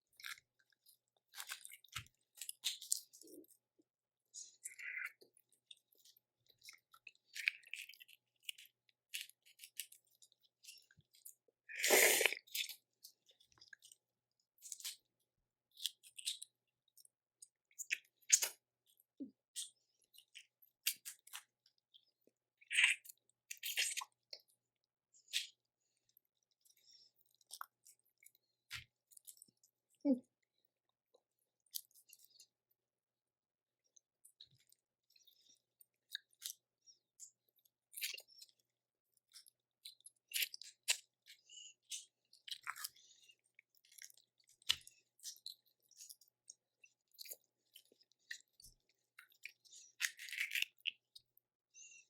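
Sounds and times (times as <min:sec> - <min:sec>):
chewing: 0:00.0 - 0:24.6, 0:25.2 - 0:30.1, 0:31.1 - 0:32.5, 0:34.2 - 0:51.4
slurping: 0:11.7 - 0:12.7.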